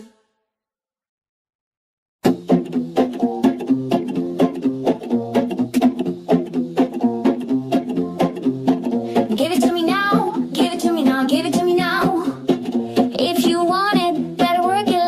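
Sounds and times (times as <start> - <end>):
strummed acoustic guitar: 2.2 - 15.0
person singing: 8.8 - 15.0.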